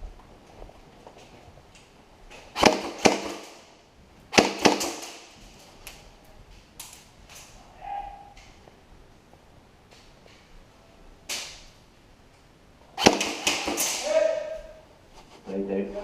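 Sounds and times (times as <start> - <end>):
airsoft gun cracks: 2.6 - 3.7, 4.4 - 6.0, 11.3 - 11.6, 13.0 - 14.1.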